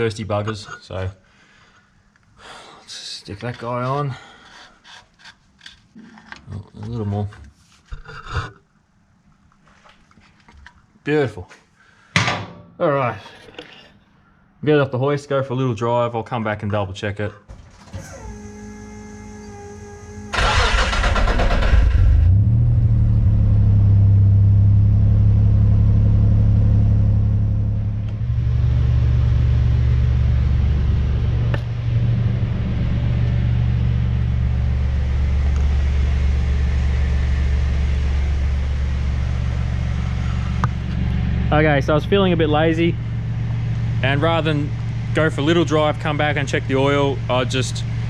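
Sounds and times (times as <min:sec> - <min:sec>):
car engine cranking and starting: 0:17.5 - 0:48.0
car engine running: 0:17.5 - 0:48.0.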